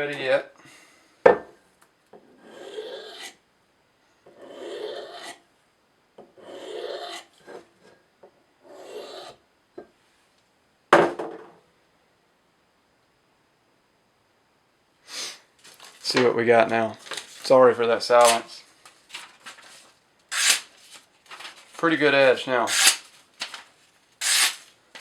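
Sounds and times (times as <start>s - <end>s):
knife scraping on ceramic: 2.4s - 3.4s, 4.3s - 5.4s, 6.4s - 7.6s.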